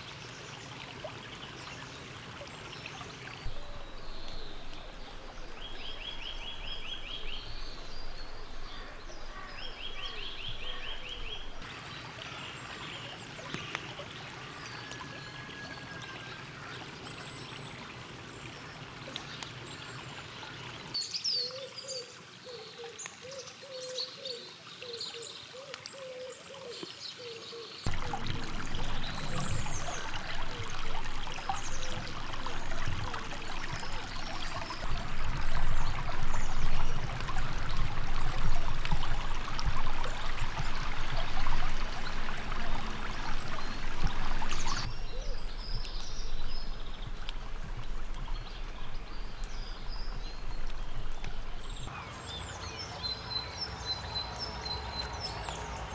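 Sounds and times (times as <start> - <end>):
stream trickling and babbling: 0.0 - 55.9
birds chirping: 3.2 - 12.8, 27.9 - 55.9.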